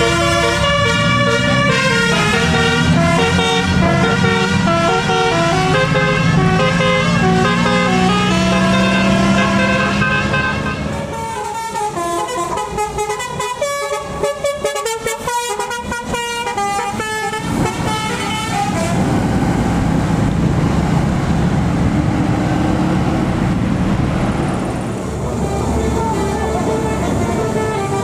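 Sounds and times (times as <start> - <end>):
musical air horn tune: 0.0 - 19.0, 25.3 - 28.0
bus engine rumble: 0.0 - 28.0
road noise: 0.0 - 28.0.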